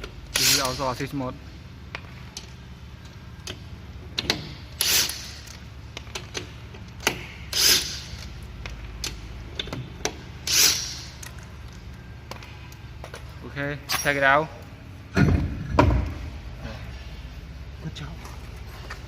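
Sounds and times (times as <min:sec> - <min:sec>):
cordless impact wrench bursts: 0:04.8 - 0:05.5, 0:07.5 - 0:08.2, 0:10.4 - 0:11.1.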